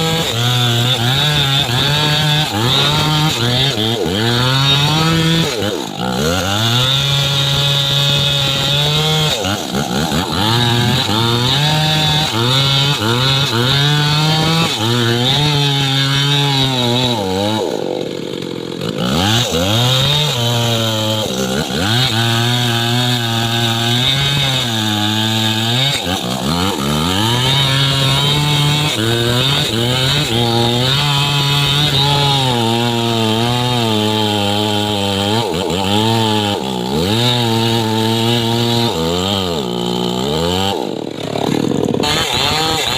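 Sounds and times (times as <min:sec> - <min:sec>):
chainsaw cutting tree trunk: 0:00.0 - 0:42.9.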